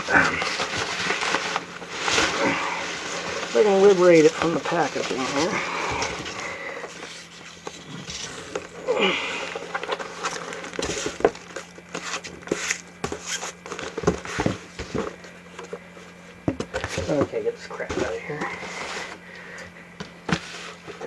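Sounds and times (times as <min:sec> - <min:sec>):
packaging rustling and crinkling: 0:00.0 - 0:15.9.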